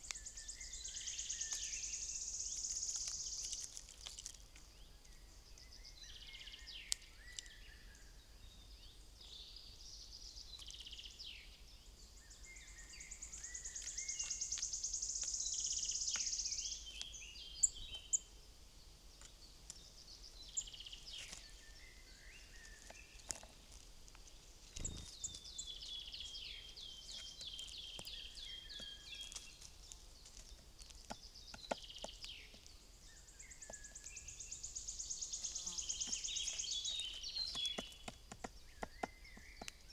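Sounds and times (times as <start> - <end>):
songbirds chirping: 0.0 - 39.9
bird high trill: 24.8 - 25.5.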